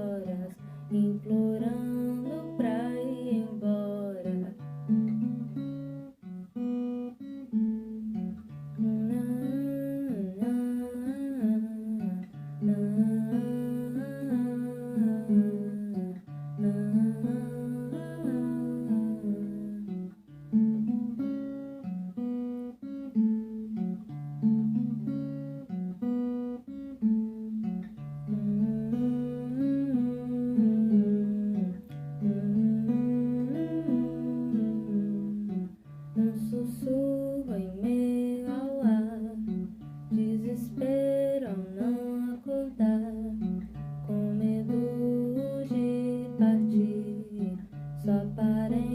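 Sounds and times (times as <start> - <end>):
person singing: 0.0 - 4.6, 8.8 - 20.0, 28.3 - 35.6, 36.2 - 48.9
acoustic guitar: 0.0 - 48.9.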